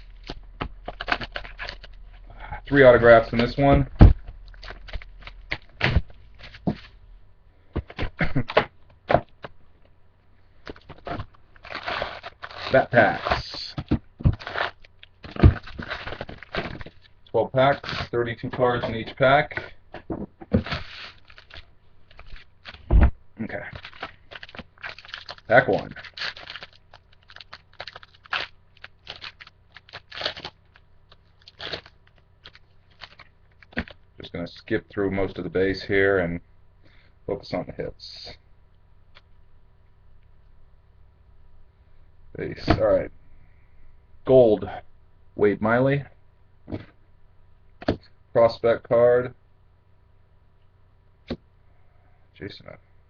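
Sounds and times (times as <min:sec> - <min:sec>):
wrapper crinkling and tearing: 0:00.0 - 0:02.2, 0:04.2 - 0:06.9, 0:10.7 - 0:18.2, 0:20.5 - 0:22.9, 0:23.6 - 0:34.0.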